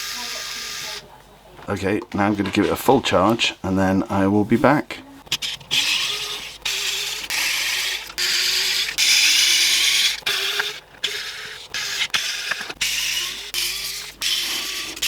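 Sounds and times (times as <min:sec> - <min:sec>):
electric screwdriver whirring: 0:00.0 - 0:01.1, 0:05.3 - 0:15.0.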